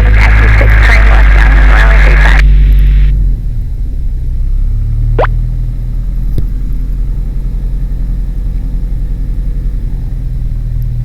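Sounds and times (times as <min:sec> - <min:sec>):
light aircraft engine drone: 0:00.0 - 0:11.0.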